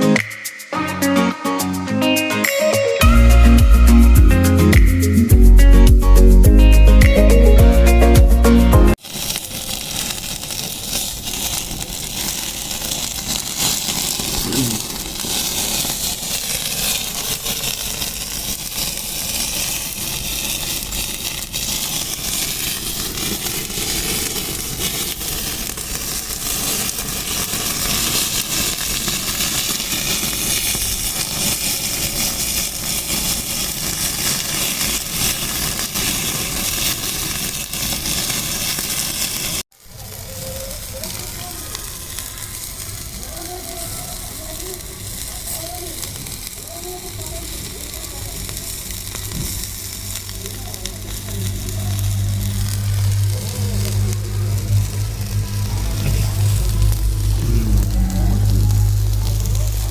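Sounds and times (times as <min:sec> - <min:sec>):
chicken sizzling: 0:03.0 - 0:08.2, 0:08.9 - 0:59.9
wood fire crackling: 0:08.9 - 0:59.9.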